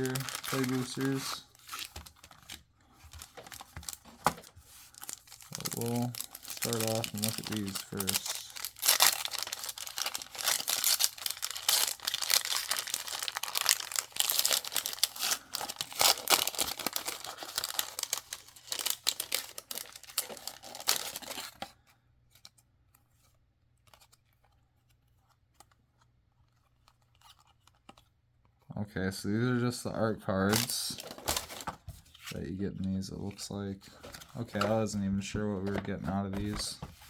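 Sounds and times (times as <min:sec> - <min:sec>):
wrapper tearing and crinkling: 0:00.0 - 0:21.6.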